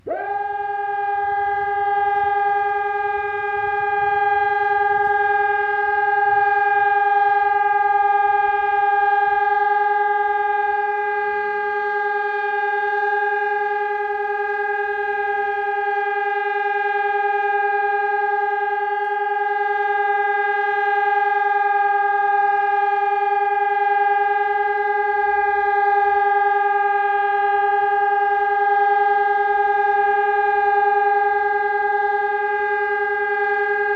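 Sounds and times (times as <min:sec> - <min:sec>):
steady alarm tone: 0:00.0 - 0:33.9.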